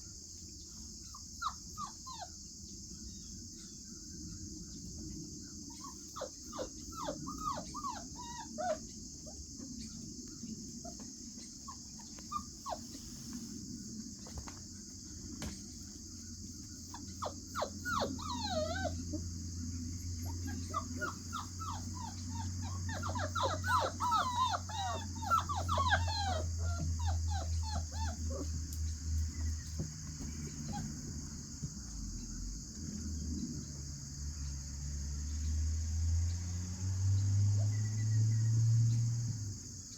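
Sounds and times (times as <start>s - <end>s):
puppies whimpering and yipping: 1.2s - 2.3s, 5.8s - 8.9s, 10.9s - 13.3s, 16.9s - 31.1s.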